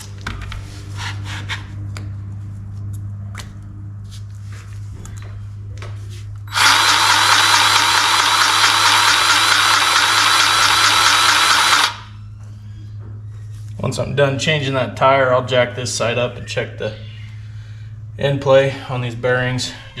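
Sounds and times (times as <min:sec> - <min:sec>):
impact wrench hammering: 0:06.5 - 0:12.1.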